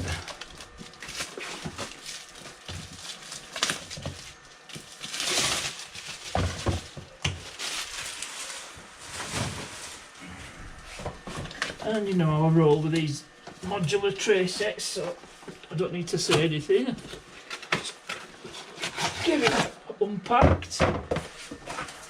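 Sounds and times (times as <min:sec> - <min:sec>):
packaging rustling and crinkling: 0:00.0 - 0:15.4, 0:21.3 - 0:22.0.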